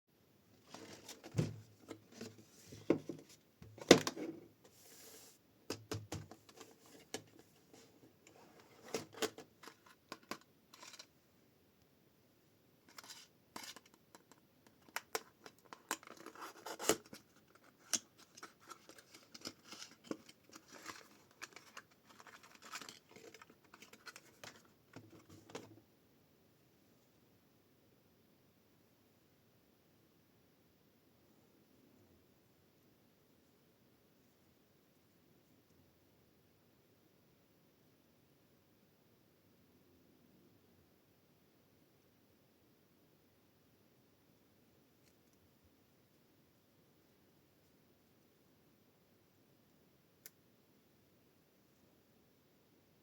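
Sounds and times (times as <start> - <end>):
sharp clicks and scrapes: 8.2 - 11.1
packaging being torn and rustled: 18.3 - 24.4.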